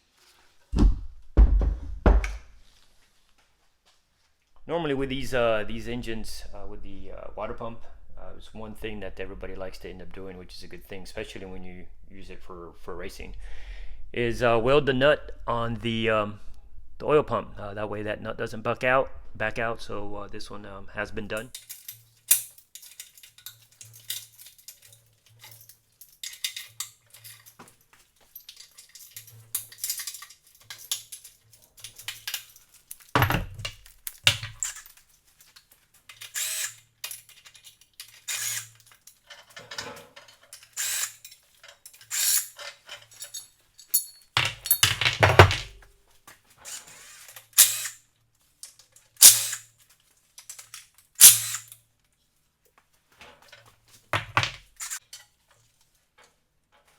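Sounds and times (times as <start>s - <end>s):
heavy thumps: 0.7s - 2.5s, 33.2s - 34.6s, 44.4s - 45.8s
metal tools and parts clinking: 21.4s - 45.8s, 46.6s - 48.0s, 48.6s - 51.8s, 53.3s - 55.4s.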